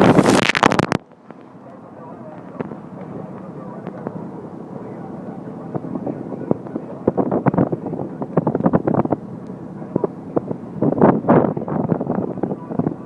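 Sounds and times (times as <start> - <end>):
sharp crackling knocks: 0.0 - 1.5
boat engine droning: 0.0 - 13.0.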